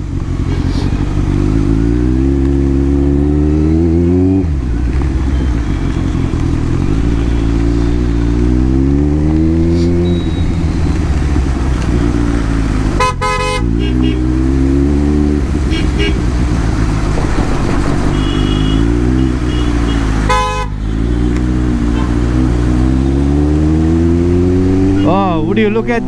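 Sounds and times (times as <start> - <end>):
motorcycle engine accelerating: 0.0 - 26.0
vehicle horn honking: 5.0 - 14.9, 15.5 - 16.7, 17.6 - 22.4, 24.8 - 25.3.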